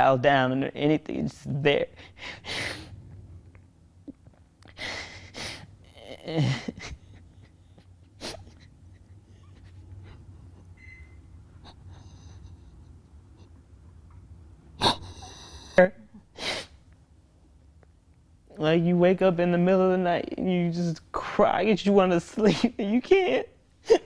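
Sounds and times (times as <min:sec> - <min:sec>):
man breathing heavily: 0:04.7 - 0:06.2.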